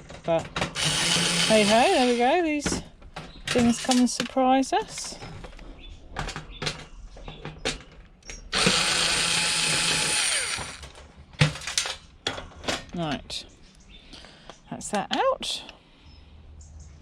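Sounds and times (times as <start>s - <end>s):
power drill running: 0.8s - 2.4s, 8.5s - 11.0s
clicks and knocks of parts handled: 2.6s - 8.5s, 10.5s - 13.0s.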